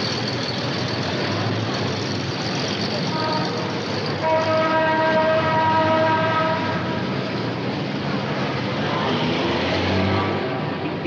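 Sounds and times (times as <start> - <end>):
street traffic rumble: 0.0 - 11.0
horn blast: 4.2 - 6.9.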